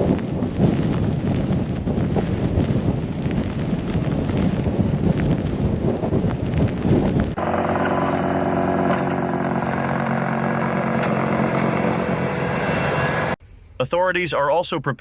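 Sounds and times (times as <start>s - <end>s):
wind buffeting microphone: 0.0s - 13.4s
vehicle engine running: 7.2s - 13.4s.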